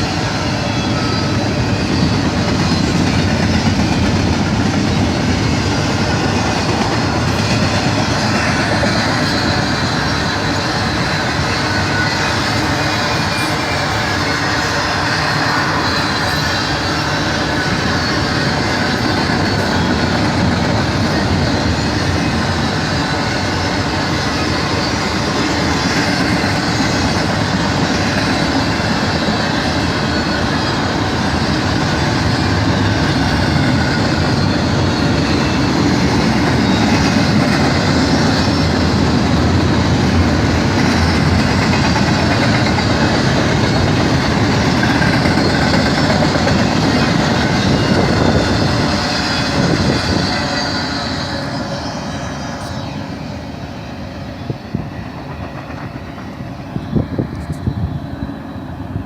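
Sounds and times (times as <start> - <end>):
steel wheels running on rails: 0.0 - 59.0.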